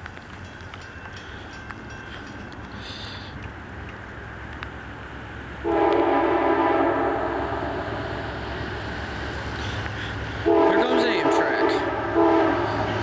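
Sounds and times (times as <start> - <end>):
train rumbling: 0.0 - 13.0
locomotive air horn blast: 5.6 - 8.1, 10.4 - 13.0.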